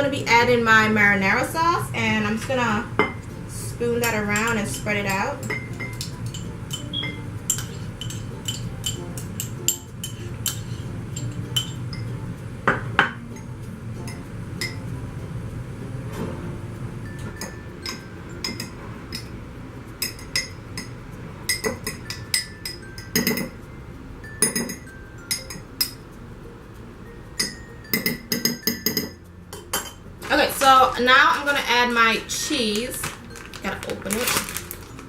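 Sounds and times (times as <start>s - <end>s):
spoon clinking against mug: 3.0s - 3.2s, 4.0s - 14.8s, 17.1s - 19.3s, 20.0s - 20.9s, 21.5s - 23.6s, 24.2s - 26.0s, 27.4s - 30.0s.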